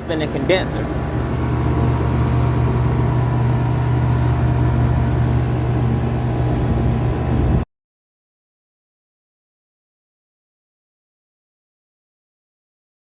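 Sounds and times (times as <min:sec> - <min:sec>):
air conditioning unit humming: 0:00.0 - 0:07.6.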